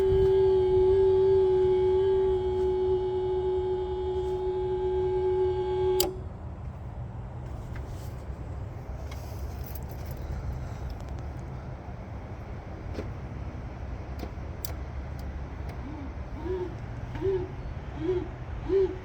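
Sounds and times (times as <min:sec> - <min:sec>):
low rumble: 0:00.0 - 0:05.2
steady whine: 0:00.0 - 0:19.0
click: 0:06.0 - 0:06.2, 0:14.2 - 0:15.8.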